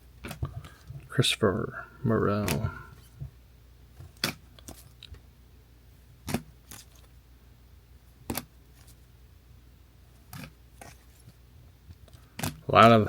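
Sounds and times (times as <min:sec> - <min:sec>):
cards clicking and slapping: 0:00.2 - 0:00.8, 0:02.4 - 0:02.7, 0:04.0 - 0:05.2, 0:06.2 - 0:07.1, 0:08.3 - 0:08.9, 0:10.2 - 0:11.3, 0:12.0 - 0:13.0.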